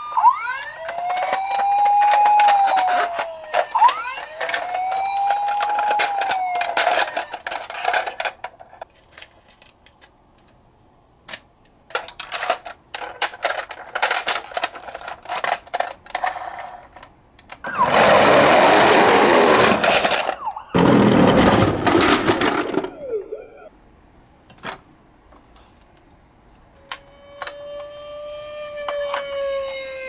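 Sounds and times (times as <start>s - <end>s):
toy siren gliding tone: 0.0s - 7.8s, 26.8s - 30.0s
toy cars clicking and rattling: 0.5s - 10.1s, 11.3s - 23.1s.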